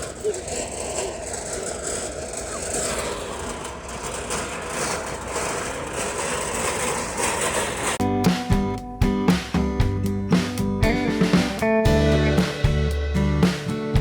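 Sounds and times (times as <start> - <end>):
vehicle running: 0.0 - 14.0.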